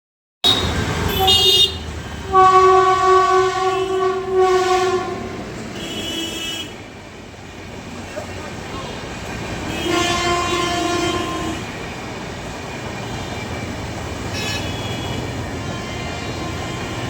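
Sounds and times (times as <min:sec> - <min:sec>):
train horn: 0:00.4 - 0:06.8, 0:09.6 - 0:11.8, 0:14.3 - 0:17.0
train rumble: 0:00.4 - 0:17.0.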